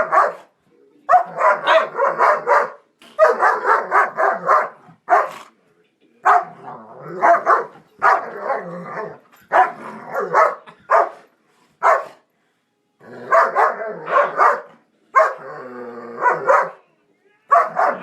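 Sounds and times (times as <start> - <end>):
dog barking and yowling: 0.0 - 0.5, 1.1 - 5.4, 6.2 - 11.2, 11.8 - 12.2, 13.2 - 16.8, 17.5 - 18.0.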